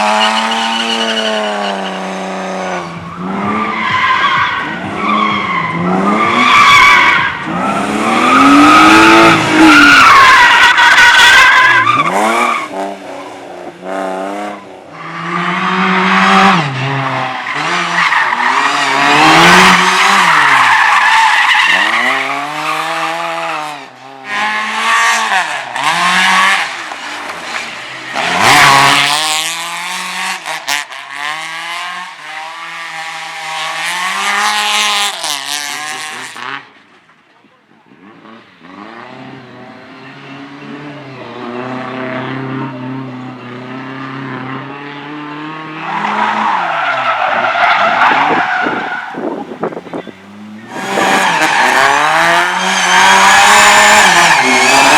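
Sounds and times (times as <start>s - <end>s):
tyres squealing: 0.0s - 12.8s, 17.4s - 23.7s
race car engine revving: 0.0s - 36.9s, 38.0s - 54.9s.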